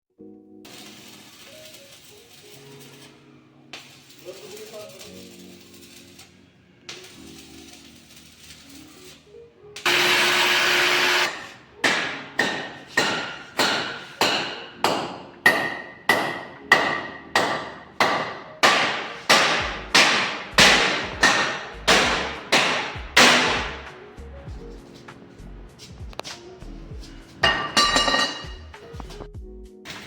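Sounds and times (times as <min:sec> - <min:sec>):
loud noisy burst: 0:09.8 - 0:11.4
hammer beating metal: 0:09.8 - 0:24.0, 0:27.4 - 0:28.8.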